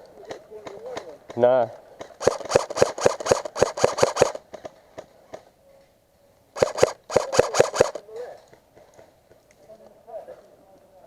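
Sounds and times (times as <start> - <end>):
airsoft gun shots: 2.2 - 4.4, 6.6 - 8.0.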